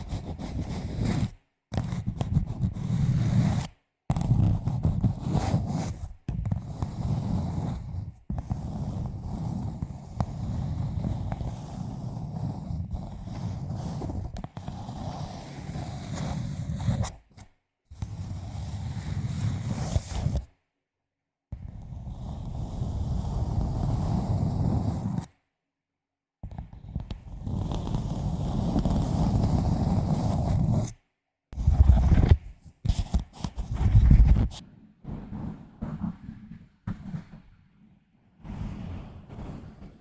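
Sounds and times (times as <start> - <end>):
fingers scratching a microphone: 0.0 - 20.6, 21.6 - 25.4, 26.4 - 37.6, 38.4 - 40.0.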